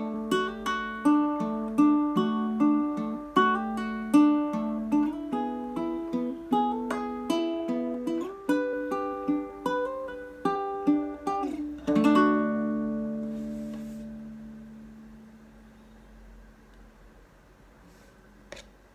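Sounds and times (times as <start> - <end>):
ukulele fingerpicking: 0.0 - 14.8.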